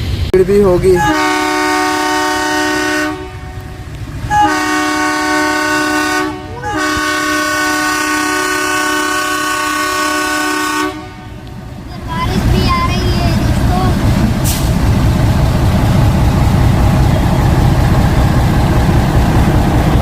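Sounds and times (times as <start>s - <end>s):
locomotive horn blasts: 0.9s - 11.5s.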